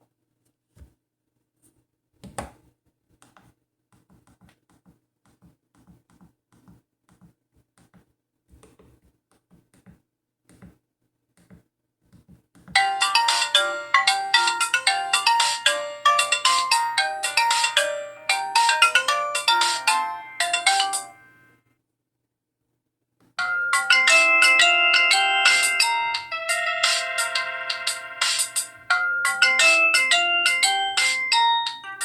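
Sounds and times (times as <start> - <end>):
polyphonic phone ringtone: 12.8 - 21.5, 23.4 - 32.0.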